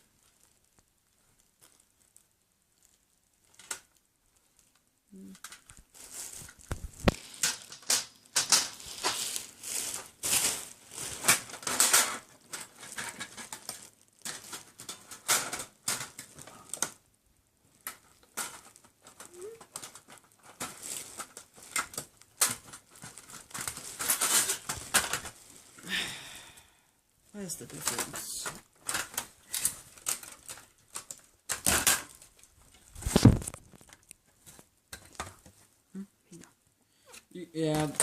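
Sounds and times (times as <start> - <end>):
plastic parts clicking and scraping: 3.4 - 17.0, 17.7 - 25.8, 27.6 - 35.6.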